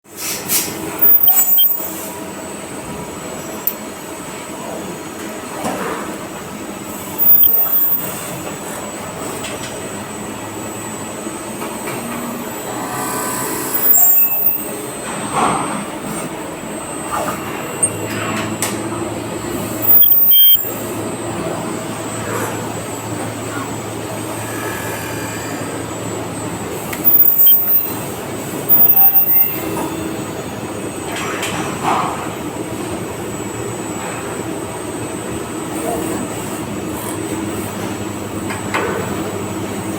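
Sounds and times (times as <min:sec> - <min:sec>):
machine running with high whine: 0:00.8 - 0:39.9
high-pitched machine squealing: 0:01.0 - 0:02.0, 0:07.1 - 0:08.3, 0:12.7 - 0:14.8, 0:19.6 - 0:20.9, 0:24.2 - 0:26.2, 0:27.0 - 0:30.0.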